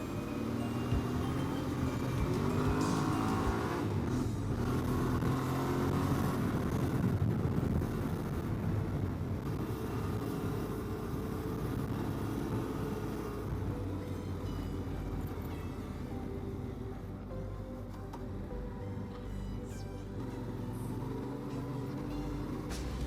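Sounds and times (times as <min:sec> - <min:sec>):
motorcycle engine accelerating: 0:00.0 - 0:08.7.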